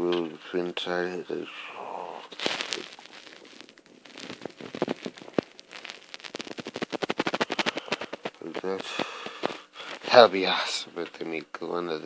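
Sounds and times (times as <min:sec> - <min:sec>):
plastic packaging crackling: 0:02.0 - 0:10.4.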